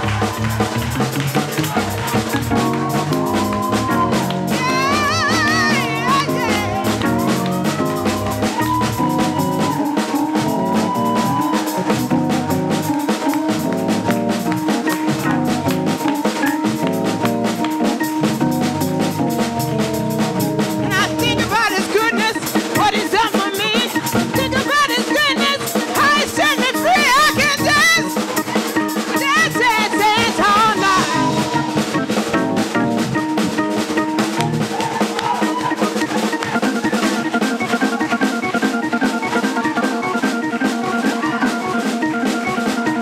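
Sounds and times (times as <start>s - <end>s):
high melodic runs: 0.0s - 41.1s
fast drum kit: 0.0s - 43.0s.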